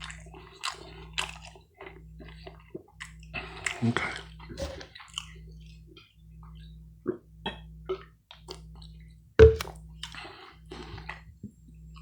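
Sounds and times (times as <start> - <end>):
person chewing food: 0.0 - 5.8
low steady hum: 0.0 - 12.0.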